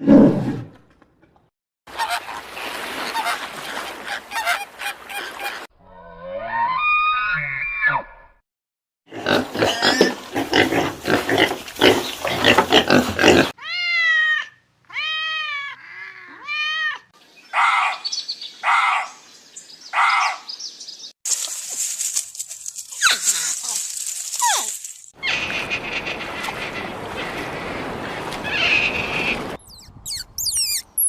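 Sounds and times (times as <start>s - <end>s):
rising and falling animal calls: 5.4s - 8.3s, 25.2s - 31.0s
quick falling whistles: 29.7s - 31.0s.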